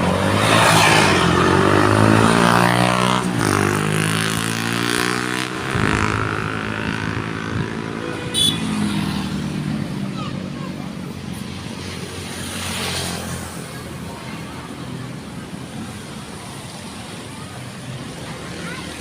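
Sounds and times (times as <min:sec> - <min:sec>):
bus engine and road noise: 0:00.0 - 0:19.0
bus air horn blast: 0:08.0 - 0:09.0.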